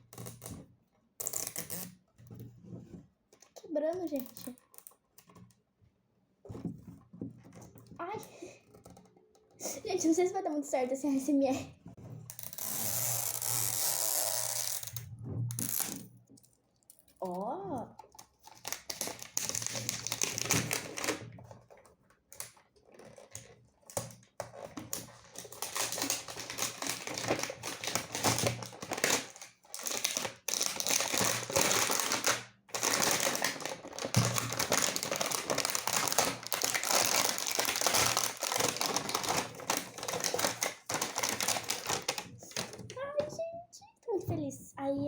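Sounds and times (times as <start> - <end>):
plastic wrapping crinkling: 18.0 - 43.0.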